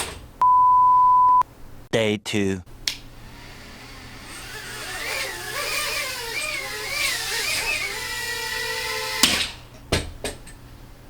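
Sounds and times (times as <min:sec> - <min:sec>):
drone motors whining: 0:03.1 - 0:09.6.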